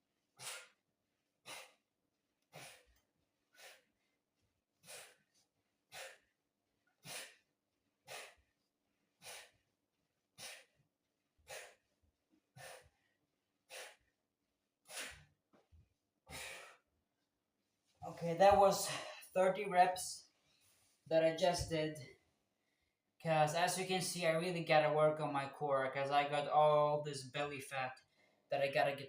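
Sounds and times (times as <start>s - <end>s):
man breathing out forcefully: 0.4s - 0.8s, 2.5s - 2.9s, 3.6s - 3.9s, 4.8s - 5.2s, 5.9s - 6.3s, 7.0s - 7.4s, 8.1s - 8.5s, 9.2s - 9.6s, 10.4s - 10.8s, 11.5s - 11.9s, 12.6s - 13.0s, 13.7s - 14.0s, 14.9s - 15.3s, 16.3s - 16.8s.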